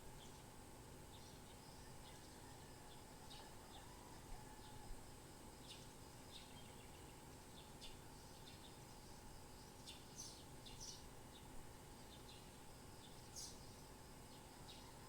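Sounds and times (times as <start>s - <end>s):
steady background hiss: 0.0s - 15.0s
faint bird chirps: 1.1s - 4.9s, 5.6s - 15.0s.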